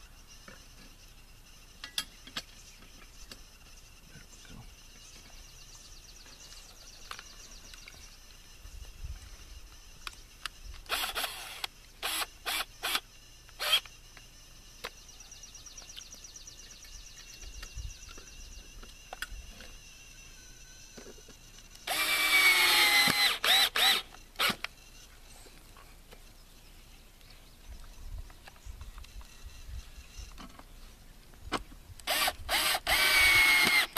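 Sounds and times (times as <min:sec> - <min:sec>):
power drill running: 0:10.9 - 0:13.0, 0:13.6 - 0:13.9, 0:21.8 - 0:24.6, 0:32.1 - 0:33.9.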